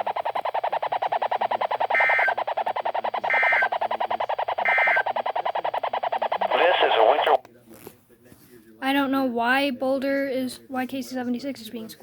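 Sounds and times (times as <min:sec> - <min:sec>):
rapid buzzing pulse: 0:00.0 - 0:07.4
warbling digital data bursts: 0:00.0 - 0:07.4.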